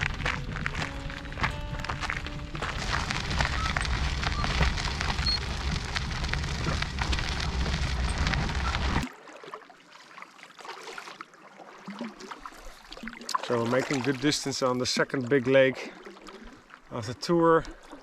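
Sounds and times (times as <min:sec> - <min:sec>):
dense crackling rushing noise: 0:00.0 - 0:09.0
heavy low rumble: 0:00.0 - 0:09.0
small clicks and ticks: 0:02.2 - 0:09.0.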